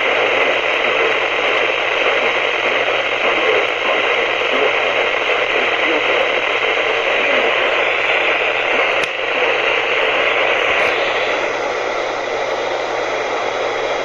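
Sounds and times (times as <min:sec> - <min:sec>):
radio static hiss: 0:00.0 - 0:14.0.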